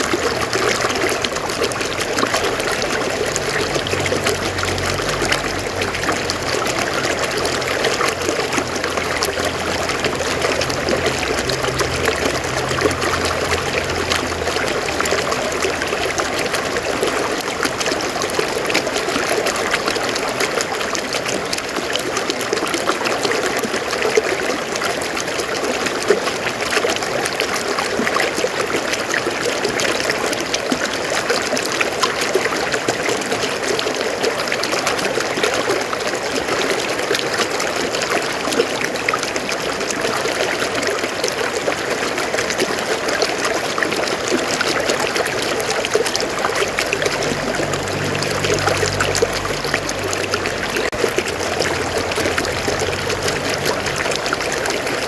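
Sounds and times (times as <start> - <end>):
river water flowing over rocks: 0.0 - 55.0
faint low hum: 45.0 - 55.0.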